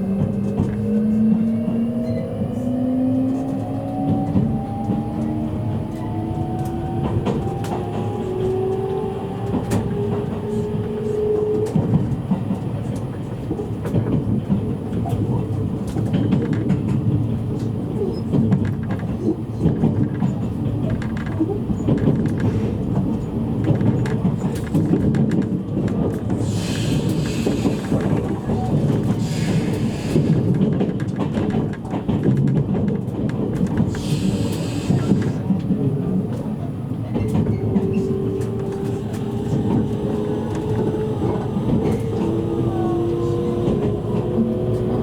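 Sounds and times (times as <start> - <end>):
train running rumble: 0.0 - 45.0.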